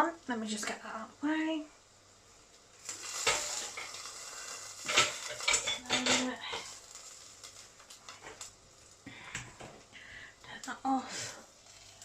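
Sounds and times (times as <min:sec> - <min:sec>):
spatula clattering on frying pan: 0:03.1 - 0:04.1, 0:04.8 - 0:06.8.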